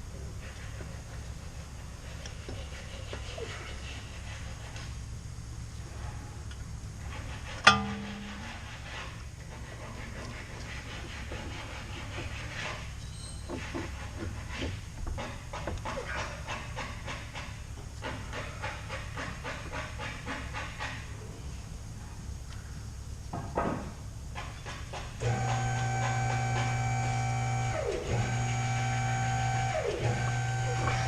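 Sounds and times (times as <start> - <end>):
steady low hum: 0.0 - 13.0, 25.2 - 31.0.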